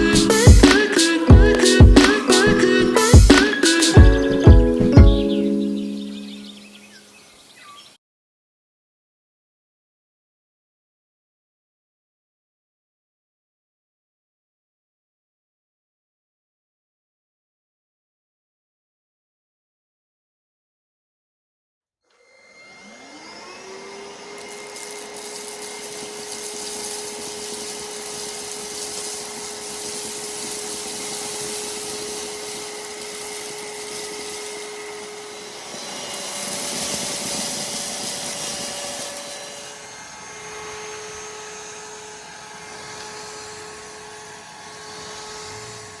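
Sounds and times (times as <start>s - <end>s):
vacuum cleaner motor whine: 0.0s - 7.0s, 22.1s - 46.0s.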